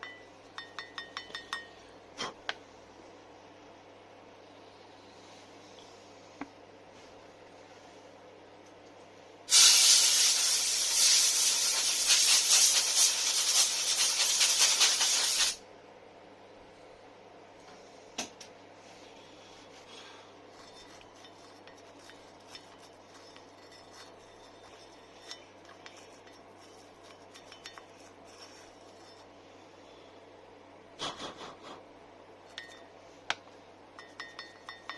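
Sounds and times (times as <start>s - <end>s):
pressurised spray hissing: 9.5s - 15.6s.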